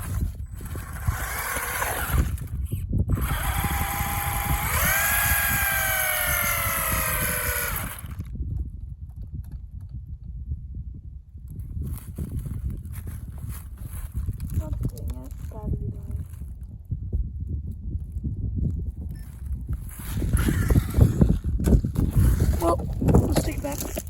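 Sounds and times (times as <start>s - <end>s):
toy car motor whining: 0.0s - 8.3s, 19.8s - 24.0s.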